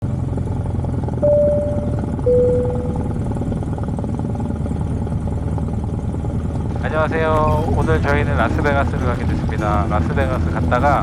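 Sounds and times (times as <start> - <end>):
light aircraft engine droning: 0.0 - 11.0
short clear tones: 1.2 - 3.3.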